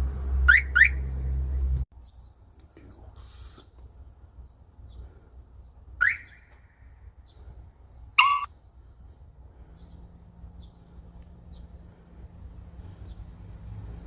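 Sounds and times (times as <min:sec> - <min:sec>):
truck alarm siren chirps: 0:00.5 - 0:01.0, 0:06.0 - 0:06.4, 0:08.2 - 0:08.5.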